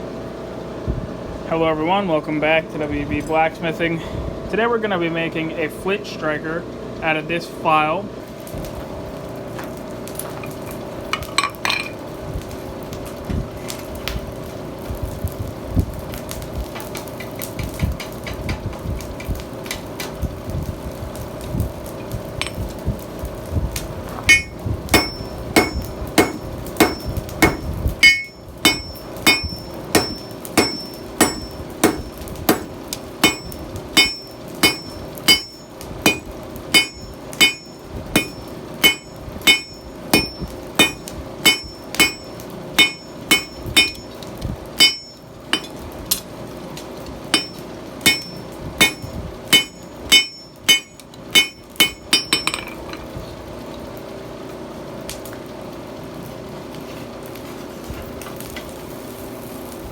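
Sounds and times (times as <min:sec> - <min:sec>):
hammer striking steel on anvil: 0:22.4 - 0:22.6, 0:24.3 - 0:44.1, 0:44.8 - 0:45.8, 0:47.3 - 0:52.9.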